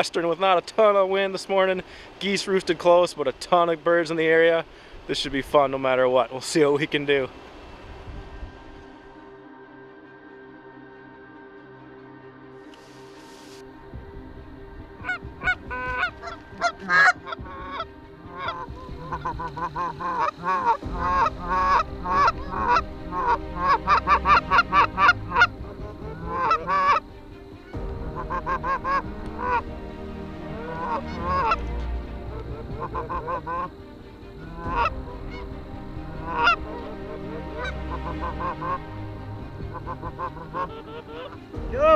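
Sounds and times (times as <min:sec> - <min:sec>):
geese honking: 0:15.0 - 0:41.9.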